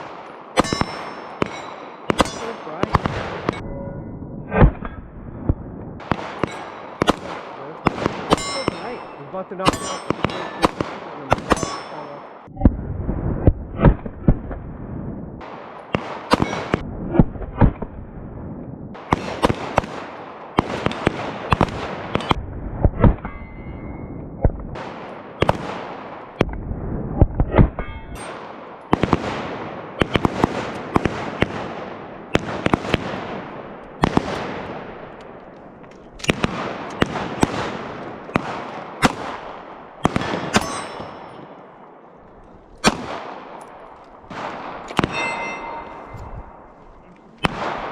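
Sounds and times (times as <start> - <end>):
pistol gunshots echoing: 0.0 - 3.6, 6.0 - 12.5, 15.4 - 16.8, 19.0 - 22.4, 24.7 - 26.4, 28.2 - 47.9.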